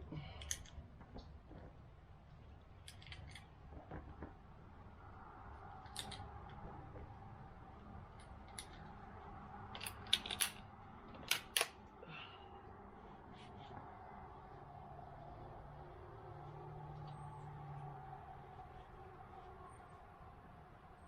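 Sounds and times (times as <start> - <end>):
faint steady hum: 0.0 - 21.0
rifle bolt metallic clicks: 9.8 - 10.6, 11.2 - 11.8.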